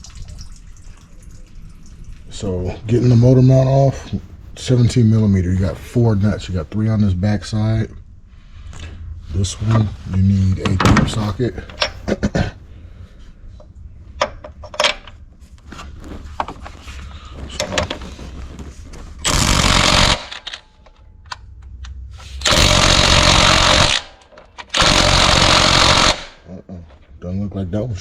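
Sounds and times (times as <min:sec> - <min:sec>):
impact wrench hammering: 0:19.2 - 0:20.6, 0:22.4 - 0:26.4.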